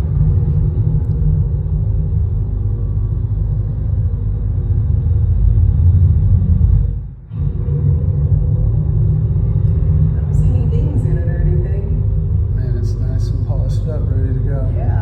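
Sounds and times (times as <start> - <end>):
steady low machine rumble: 0.0 - 15.0.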